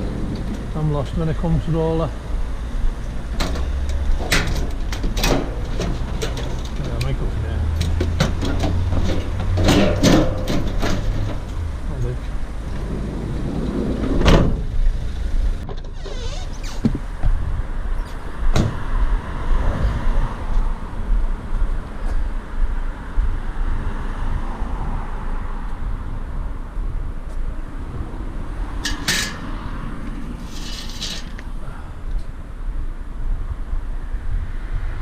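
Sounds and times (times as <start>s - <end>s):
vehicle rumbling on road: 0.0s - 35.0s
sharp knocks or rattles: 3.4s - 7.0s, 7.8s - 11.6s.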